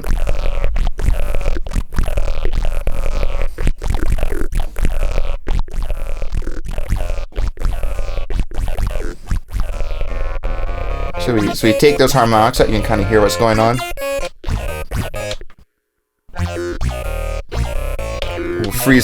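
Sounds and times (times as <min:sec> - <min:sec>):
looping electronic synthesizer sequence: 0:06.9 - 0:15.6, 0:16.3 - 0:19.0
deep sub-octave synth waves: 0:09.7 - 0:15.4, 0:16.3 - 0:19.0.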